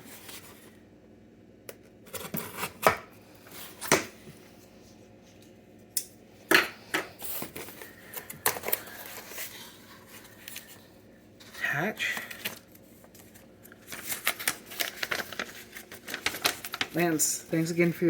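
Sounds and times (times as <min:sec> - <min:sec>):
packaging rustling and clicking: 0:12.1 - 0:17.1.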